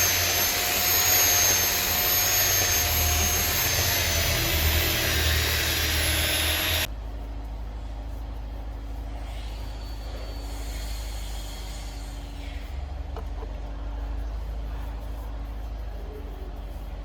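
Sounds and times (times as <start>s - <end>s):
woodworking machine whining: 0.0s - 6.9s.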